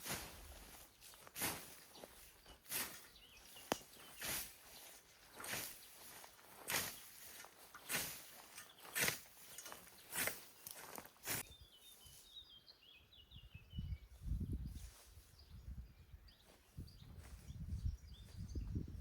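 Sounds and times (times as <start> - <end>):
scythe swishing through grass: 0.0 - 11.5
small bird chirping: 0.0 - 19.0.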